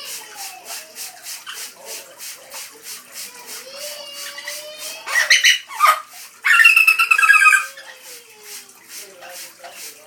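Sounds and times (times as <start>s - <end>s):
parrot squawking: 4.2s - 8.1s.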